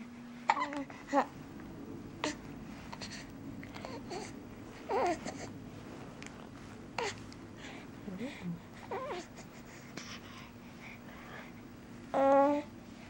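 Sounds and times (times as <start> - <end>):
infant babbling: 3.8 - 5.5, 8.8 - 9.4, 12.2 - 12.7.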